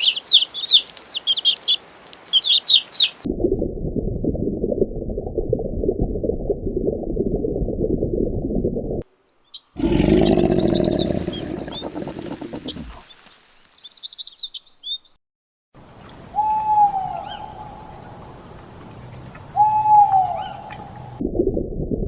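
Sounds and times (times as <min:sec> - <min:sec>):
birds chirping rapidly: 0:00.0 - 0:03.2, 0:09.4 - 0:15.2
hooting bird calls: 0:00.0 - 0:03.2, 0:09.8 - 0:15.2, 0:19.6 - 0:21.1
loud low noise: 0:03.3 - 0:09.0.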